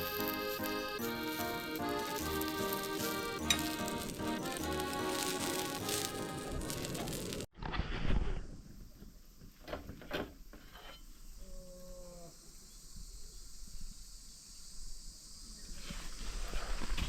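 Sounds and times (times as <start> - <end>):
high insect chirring: 0.0 - 7.4.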